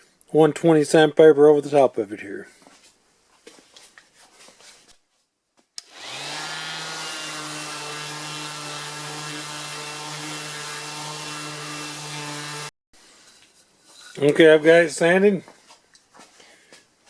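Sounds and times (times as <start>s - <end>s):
electric sander sanding: 5.8s - 12.7s.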